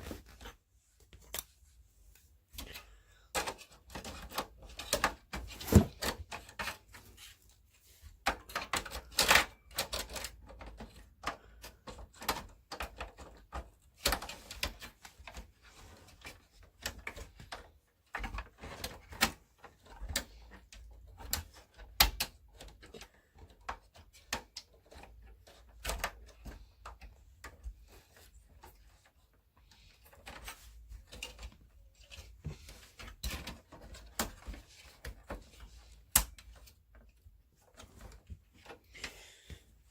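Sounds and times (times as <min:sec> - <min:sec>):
plastic and metal parts clicking: 0:08.2 - 0:38.9.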